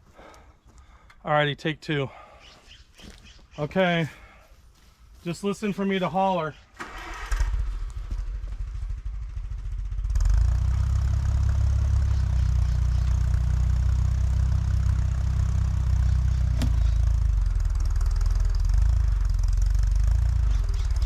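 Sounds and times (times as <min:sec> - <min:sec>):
tractor engine running: 0:06.8 - 0:21.0
sharp click: 0:16.6 - 0:17.0.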